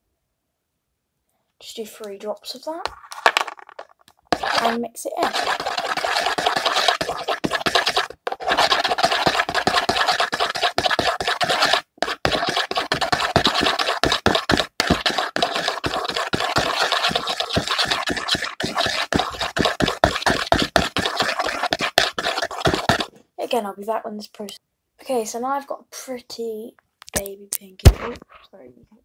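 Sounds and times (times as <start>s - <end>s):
brush handle stirring slime: 4.3s - 23.1s.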